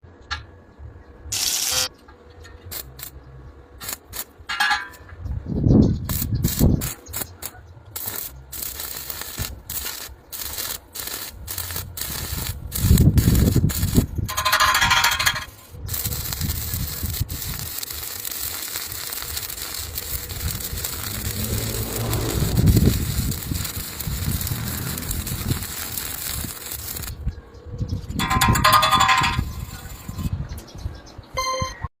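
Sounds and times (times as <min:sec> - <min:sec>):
welding arc crackling: 0:01.3 - 0:01.9, 0:02.7 - 0:03.2, 0:03.8 - 0:04.5, 0:06.0 - 0:27.4, 0:28.2 - 0:30.3.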